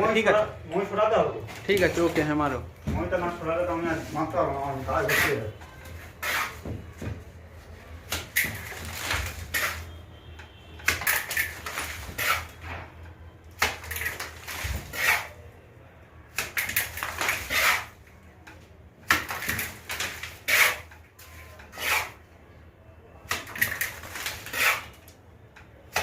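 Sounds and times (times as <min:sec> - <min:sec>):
trowel scraping wet mortar: 0:05.0 - 0:06.6, 0:10.9 - 0:12.6, 0:13.6 - 0:15.4, 0:17.2 - 0:18.0, 0:20.3 - 0:20.9, 0:21.6 - 0:22.2, 0:23.4 - 0:25.0.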